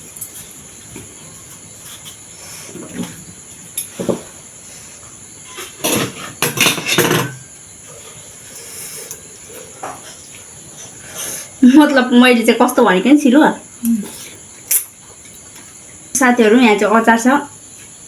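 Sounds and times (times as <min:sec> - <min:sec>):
cutlery clinking against a bowl: 0:05.5 - 0:07.5.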